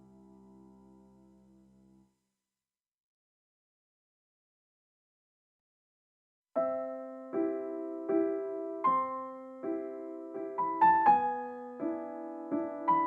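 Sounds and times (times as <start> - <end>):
gentle piano chords: 0.0 - 2.0, 6.6 - 13.0.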